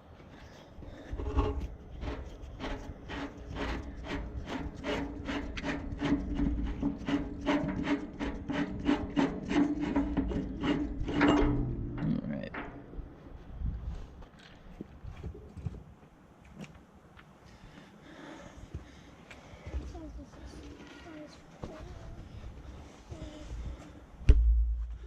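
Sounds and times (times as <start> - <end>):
metal pipe threads rasping: 0.8 - 13.4.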